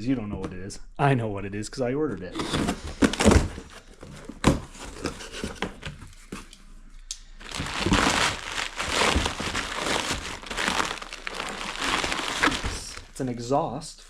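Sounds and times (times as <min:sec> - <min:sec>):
packaging wrap crinkling: 0:02.3 - 0:06.3, 0:07.4 - 0:13.3.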